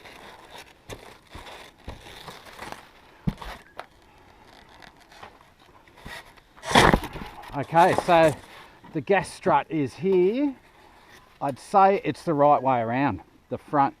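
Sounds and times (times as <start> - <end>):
packaging crinkling and rustling: 0.0 - 8.6.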